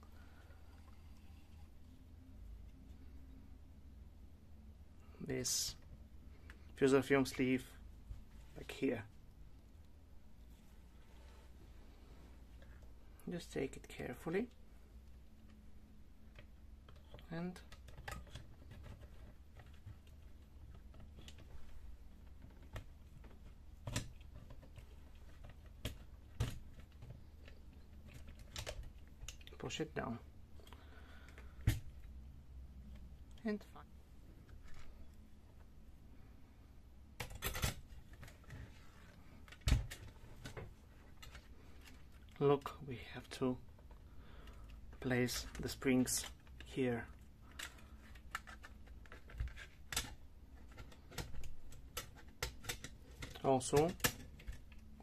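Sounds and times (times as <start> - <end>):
low steady hum: 0.0 - 55.0
plastic parts clicking: 16.3 - 29.6, 39.4 - 42.7, 43.8 - 55.0
plastic parts clicking into place: 47.5 - 54.9.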